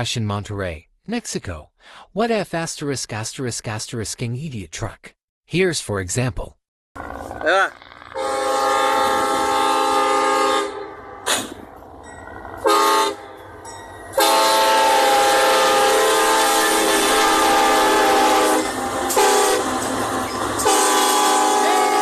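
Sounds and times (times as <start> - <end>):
passing train rumble: 7.0 - 22.0
locomotive air horn blasts: 8.1 - 11.6, 12.6 - 13.4, 14.1 - 19.7, 20.6 - 22.0.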